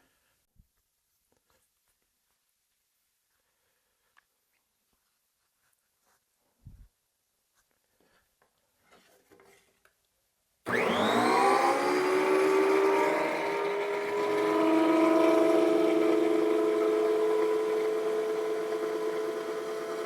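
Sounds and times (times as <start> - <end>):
electric planer motor whine: 10.7 - 20.0.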